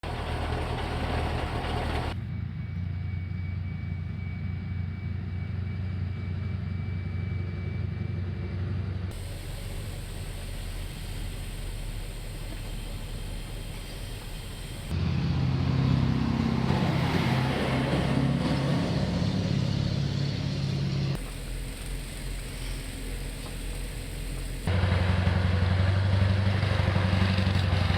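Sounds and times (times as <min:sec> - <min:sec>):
heavy diesel engine running: 0:00.0 - 0:27.9.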